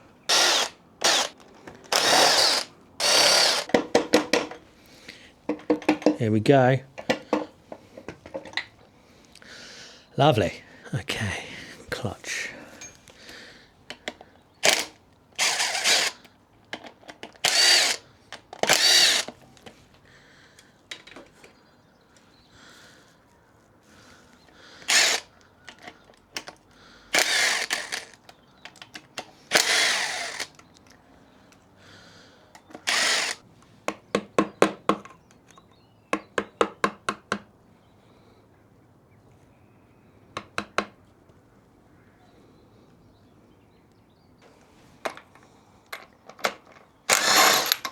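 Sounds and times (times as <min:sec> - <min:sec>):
power tool bursts: 0:00.3 - 0:03.8, 0:14.6 - 0:16.2, 0:17.4 - 0:18.0, 0:18.6 - 0:19.3, 0:24.8 - 0:25.3, 0:27.1 - 0:28.3, 0:29.5 - 0:30.6, 0:32.8 - 0:33.4, 0:47.1 - 0:47.9.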